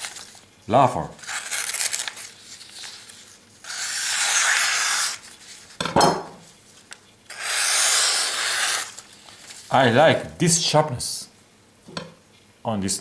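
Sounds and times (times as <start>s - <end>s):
knife slicing paper: 1.2s - 5.8s, 7.3s - 9.8s.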